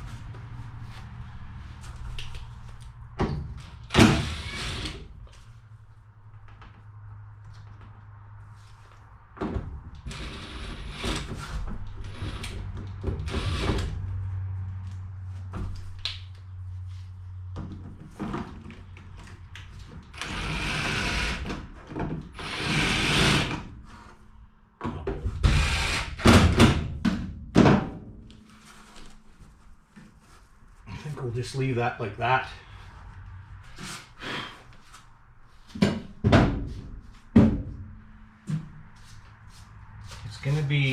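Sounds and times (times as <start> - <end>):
power drill driving screws into metal: 3.9 - 5.0, 20.2 - 21.5, 22.4 - 23.6, 25.5 - 26.6.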